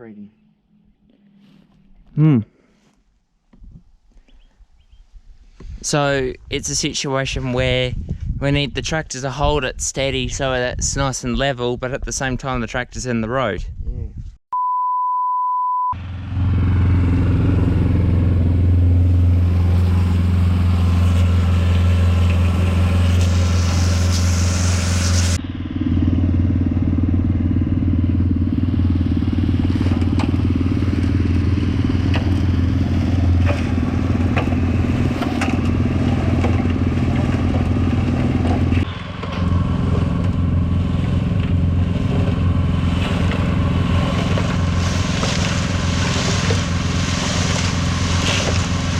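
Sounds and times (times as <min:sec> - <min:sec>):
short beep: 0:14.6 - 0:16.0
cement mixer engine running: 0:16.0 - 0:48.9.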